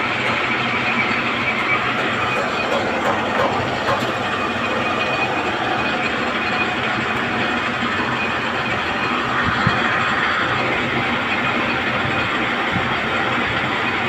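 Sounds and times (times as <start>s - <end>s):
machine drilling through steel: 0.0s - 14.0s.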